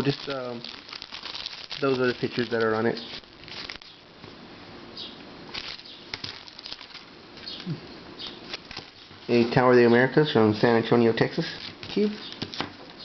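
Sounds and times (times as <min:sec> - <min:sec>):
plastic cubes rustling and clicking: 0:00.0 - 0:03.9.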